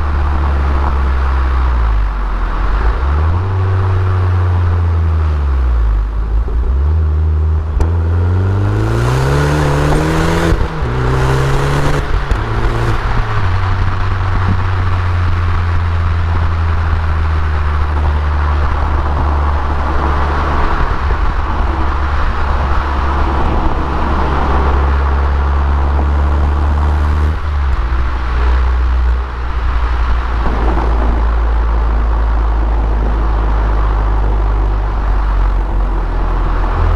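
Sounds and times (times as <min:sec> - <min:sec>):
car engine accelerating: 0:00.0 - 0:36.9.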